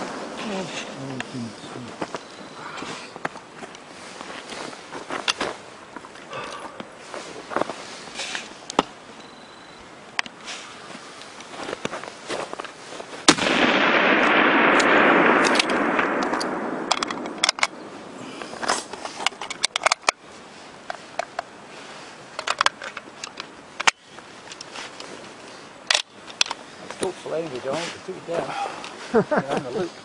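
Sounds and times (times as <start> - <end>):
rifle shot: 13.3 - 18.2.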